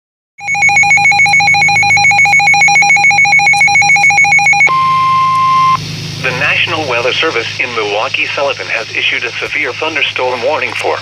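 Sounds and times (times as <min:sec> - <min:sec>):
pulsing two-pitch beep: 0:00.4 - 0:05.8
steady alert tone: 0:00.4 - 0:06.8
low hum: 0:00.4 - 0:11.0.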